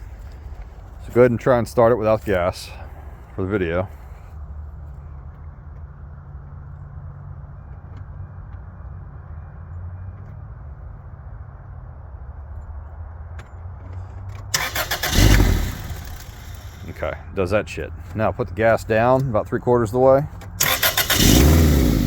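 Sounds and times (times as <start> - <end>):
car engine running: 14.5 - 17.2, 20.6 - 22.0.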